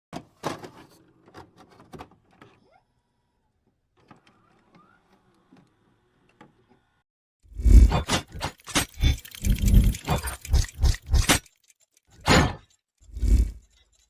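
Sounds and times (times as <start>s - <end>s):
sharp clicks and knocks: 7.7s - 14.0s.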